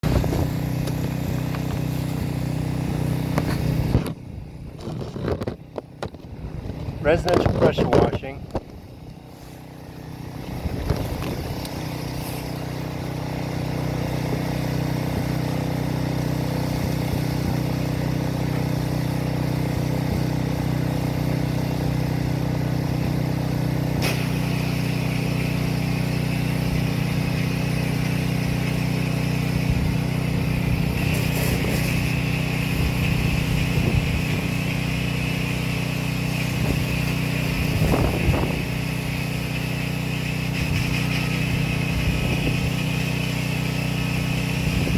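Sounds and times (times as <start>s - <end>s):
water jet hissing: 0.0s - 4.1s, 8.8s - 44.9s
pressure washer engine running: 0.0s - 44.9s.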